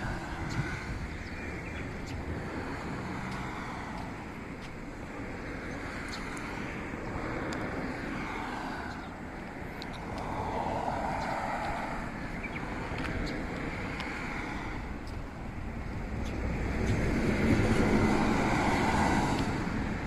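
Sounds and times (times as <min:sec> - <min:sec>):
diesel railcar rumbling on track: 0:14.8 - 0:20.0.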